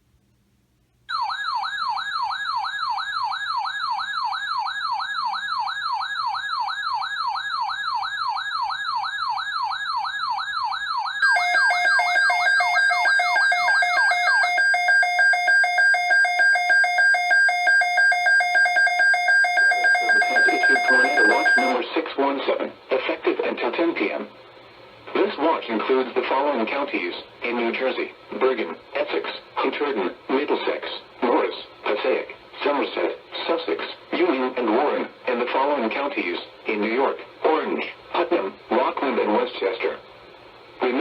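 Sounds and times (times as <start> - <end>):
warbling electronic siren: 1.1 - 21.8
pulsing electronic alert tones: 11.2 - 21.8.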